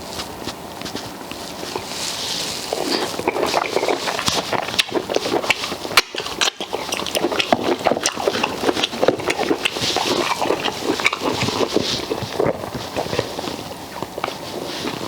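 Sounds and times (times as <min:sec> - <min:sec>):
person chewing food: 0:00.0 - 0:15.0
wet mouth smacking and clicks: 0:02.7 - 0:13.3.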